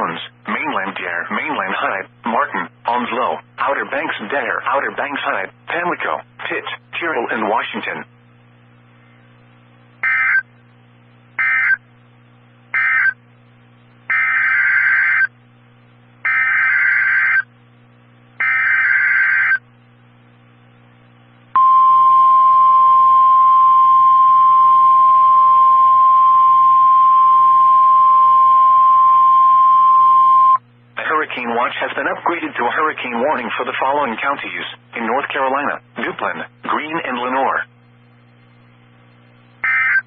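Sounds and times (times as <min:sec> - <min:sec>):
steady warning alarm tone: 0:10.0 - 0:10.5, 0:11.4 - 0:11.8, 0:12.8 - 0:13.2, 0:14.1 - 0:15.3, 0:16.3 - 0:17.5, 0:18.4 - 0:19.6, 0:21.6 - 0:30.6, 0:39.6 - 0:40.0.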